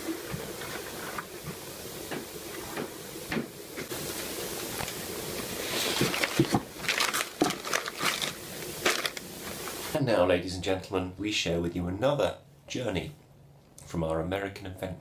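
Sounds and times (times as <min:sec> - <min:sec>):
steady hiss: 0:00.0 - 0:13.2
crinkly rustling: 0:05.6 - 0:09.9.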